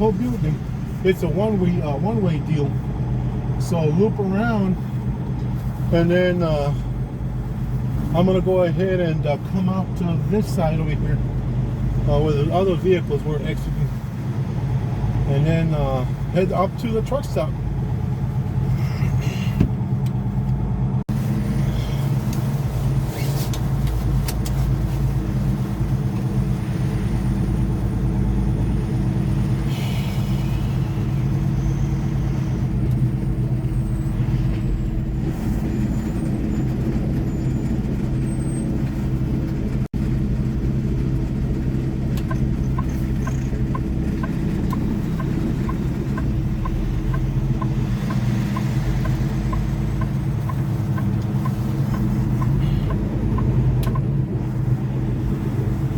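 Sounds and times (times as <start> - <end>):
truck diesel engine drone: 0.0 - 55.9
light ticking: 41.1 - 54.1.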